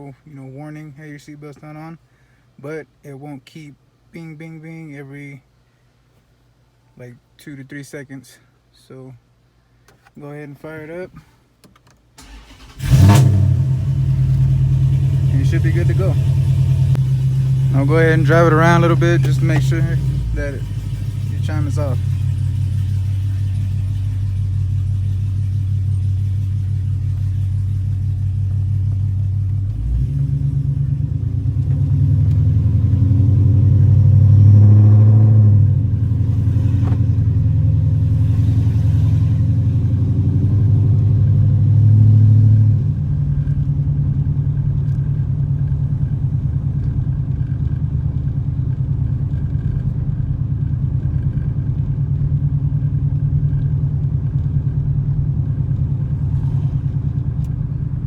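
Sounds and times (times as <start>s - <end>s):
car engine and road drone: 12.2s - 58.0s.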